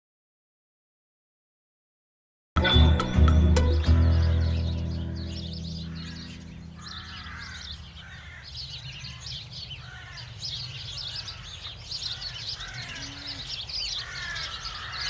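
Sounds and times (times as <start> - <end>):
birds chirping: 2.6 - 15.0.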